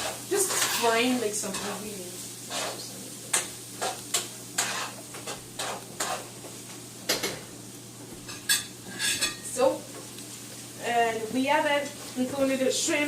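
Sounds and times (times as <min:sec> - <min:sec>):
utensil scraping pan: 0:00.0 - 0:06.4
food sizzling in oil: 0:00.0 - 0:13.0.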